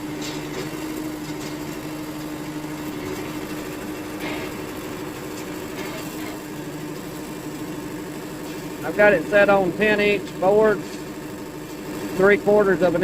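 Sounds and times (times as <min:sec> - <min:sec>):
sawmill engine idling: 0:00.0 - 0:13.0.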